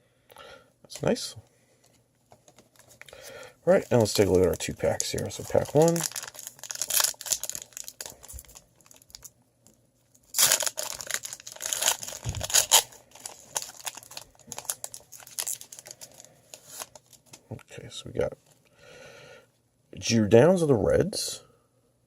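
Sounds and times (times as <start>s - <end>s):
wrapper tearing and crinkling: 3.7s - 9.3s, 10.2s - 17.3s.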